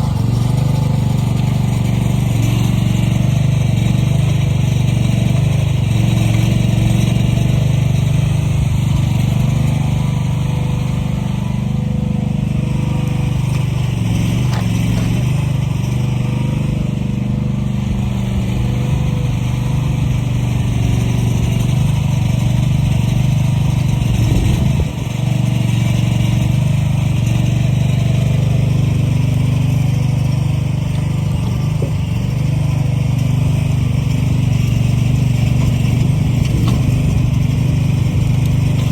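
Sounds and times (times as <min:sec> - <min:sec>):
heavy equipment engine running: 0:00.0 - 0:38.9.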